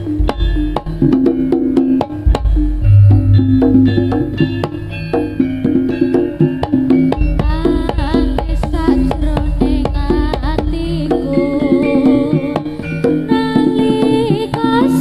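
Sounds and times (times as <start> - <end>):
gamelan music: 0.4 - 8.4
hand drum strokes: 1.6 - 5.3
wavering melody line: 2.3 - 5.2.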